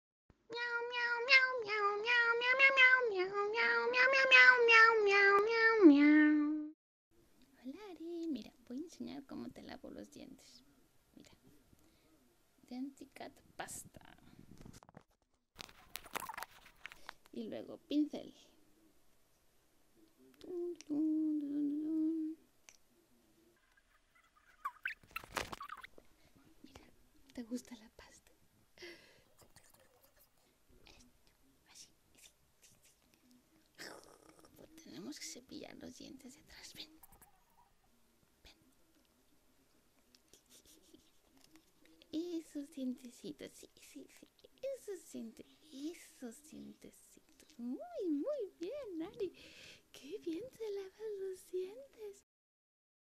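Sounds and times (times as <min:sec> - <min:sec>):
cat meowing: 0:00.5 - 0:06.1
low humming voice: 0:20.2 - 0:22.5.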